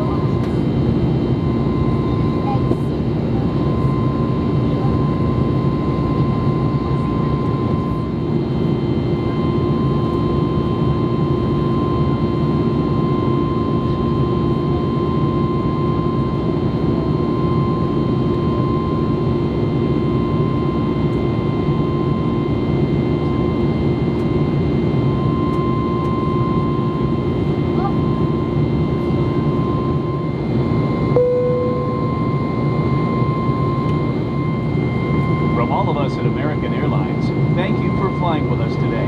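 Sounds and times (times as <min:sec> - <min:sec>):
jet engines droning: 0:00.0 - 0:39.0
steady high whine: 0:20.4 - 0:39.0.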